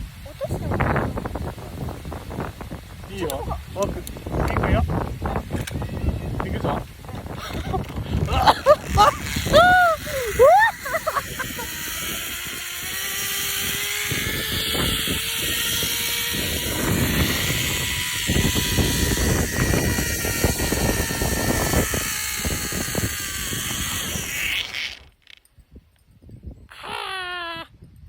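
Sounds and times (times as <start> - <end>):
wind on microphone: 0.0 - 28.0
zip line pulley whine: 7.1 - 25.5.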